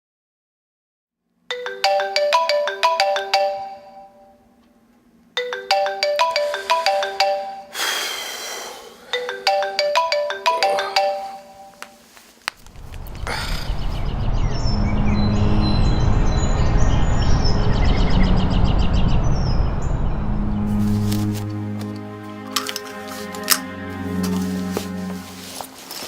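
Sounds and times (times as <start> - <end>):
phone ringtone chiming melody: 1.5 - 4.4, 5.4 - 7.8, 9.1 - 12.0.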